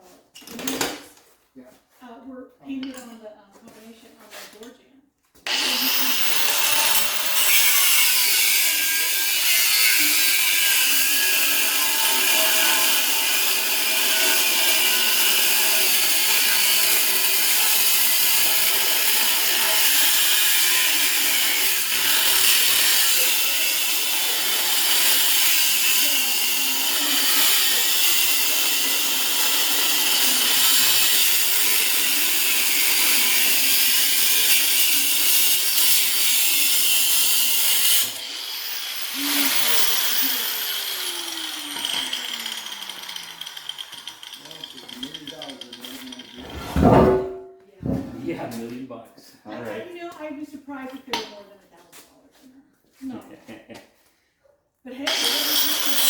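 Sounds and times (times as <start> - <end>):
grinder winding down: 5.4 - 46.4, 55.1 - 56.0
angle grinder cutting metal: 5.4 - 47.4, 55.1 - 56.0.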